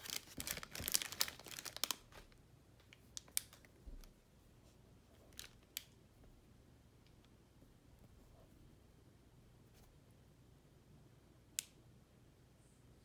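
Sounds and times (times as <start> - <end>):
crinkly rustle: 0.0 - 4.1, 5.2 - 5.7.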